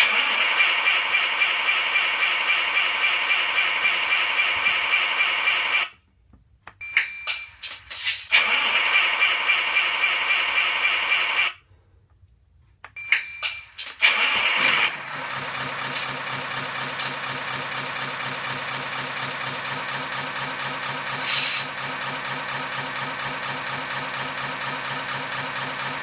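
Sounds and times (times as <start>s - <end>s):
engine sound through small loudspeaker: 0.0s - 5.9s, 14.1s - 26.0s.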